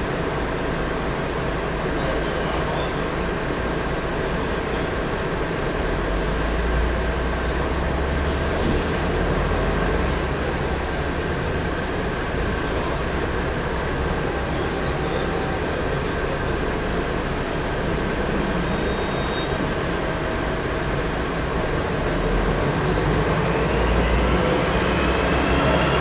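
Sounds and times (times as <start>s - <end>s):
bus diesel engine rumble: 0.0s - 26.0s
turbocharger whistle: 17.9s - 19.7s.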